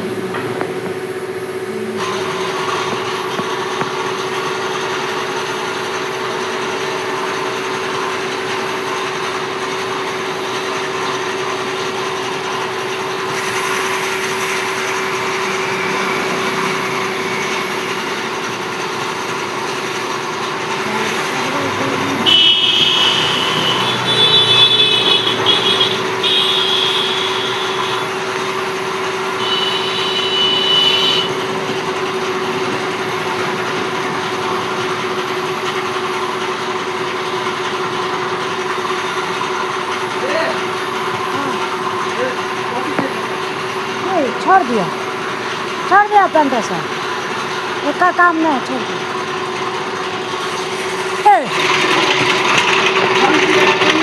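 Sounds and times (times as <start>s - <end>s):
machine hum: 0.0s - 54.0s
high squealing tones: 13.3s - 32.5s.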